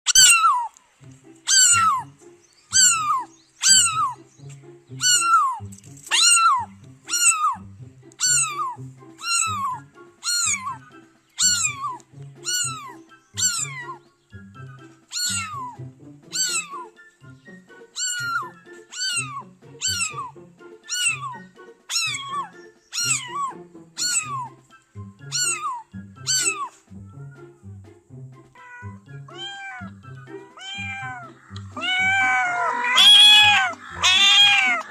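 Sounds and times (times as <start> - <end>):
cat meowing: 0.0 - 0.8, 1.5 - 2.1, 2.7 - 4.2, 5.0 - 7.6, 8.2 - 14.0, 15.1 - 16.9, 18.0 - 20.3, 20.9 - 24.5, 25.3 - 26.8, 28.6 - 34.9.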